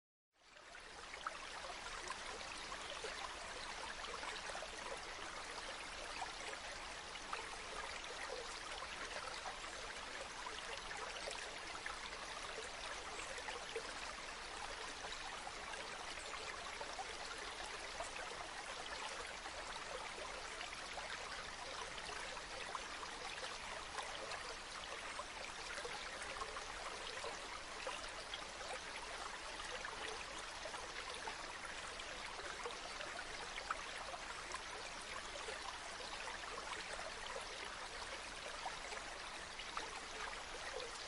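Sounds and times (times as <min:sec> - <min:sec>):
water flowing and trickling: 0:00.4 - 0:41.0.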